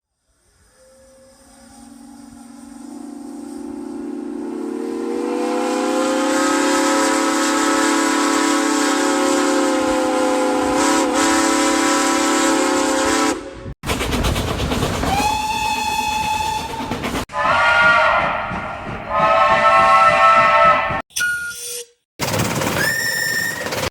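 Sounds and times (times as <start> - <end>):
steam whistle blast: 0.2 - 13.7, 15.1 - 21.8
steam hissing: 13.8 - 19.8.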